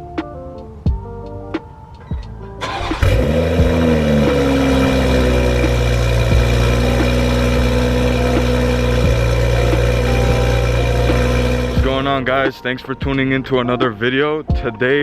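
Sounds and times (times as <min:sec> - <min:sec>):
car engine starting and idling: 0:02.1 - 0:12.1.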